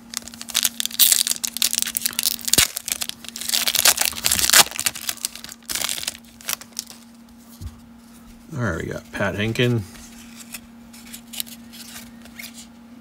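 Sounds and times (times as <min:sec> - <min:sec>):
wrapper crinkling and tearing: 0:00.0 - 0:07.1.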